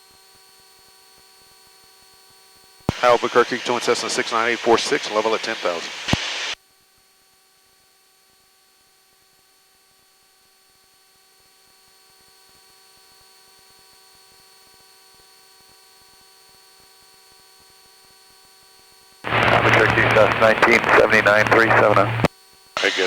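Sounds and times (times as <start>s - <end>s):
faint electrical hum: 2.9s - 6.6s, 19.3s - 23.0s
light hiss: 2.9s - 6.6s.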